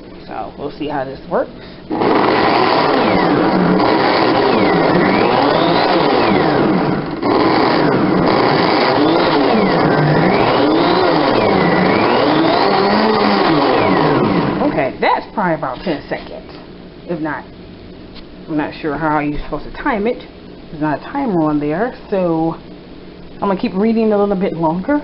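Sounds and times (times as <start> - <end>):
blender motor running: 1.9 - 14.7.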